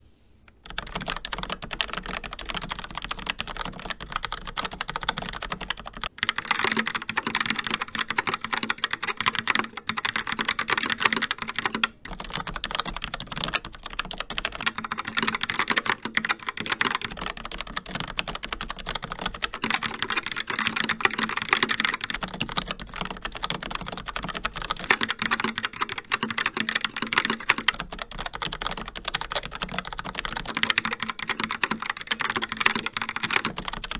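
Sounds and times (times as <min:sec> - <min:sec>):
mechanical keyboard typing: 0:00.5 - 0:33.9.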